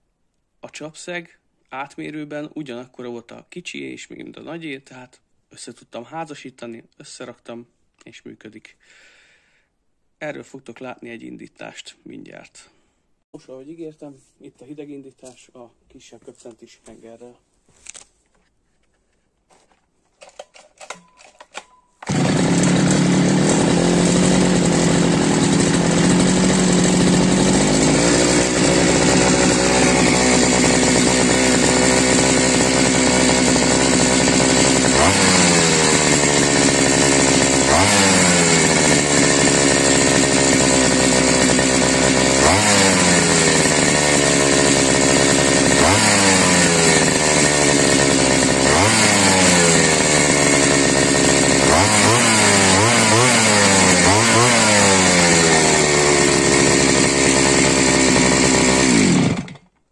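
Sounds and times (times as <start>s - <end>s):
person talking: 0.6s - 8.8s, 10.2s - 12.7s, 13.3s - 17.4s
brushcutter engine running: 20.2s - 59.7s
engine revving: 22.1s - 59.6s.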